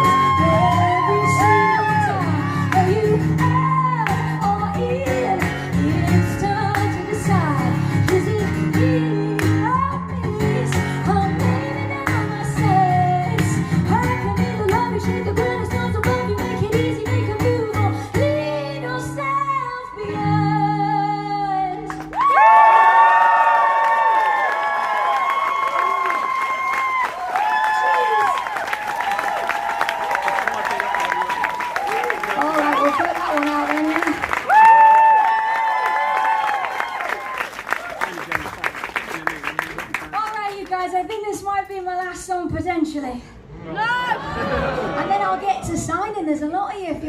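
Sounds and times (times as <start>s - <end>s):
woman singing: 0.0s - 22.1s.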